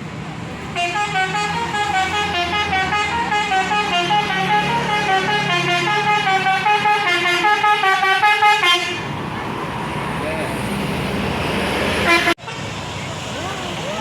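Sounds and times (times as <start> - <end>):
bus horn playing a melody: 0.7 - 9.1, 12.0 - 12.6.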